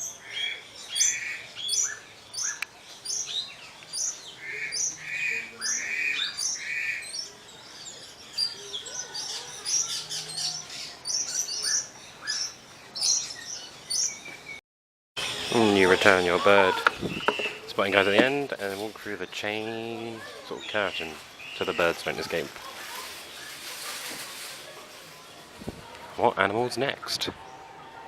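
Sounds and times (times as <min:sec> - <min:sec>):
small birds chirping: 0:00.0 - 0:14.6, 0:15.2 - 0:28.0
buzzy repeated bird notes: 0:15.2 - 0:18.0.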